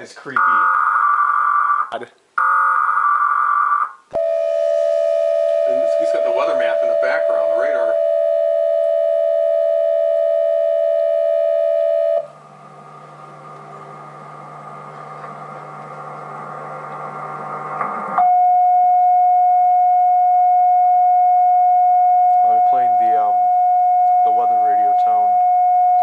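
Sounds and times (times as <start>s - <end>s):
two-tone alarm signal: 0.4s - 12.4s, 18.1s - 26.0s
loud steady tone: 0.4s - 26.0s
low droning: 4.2s - 26.0s.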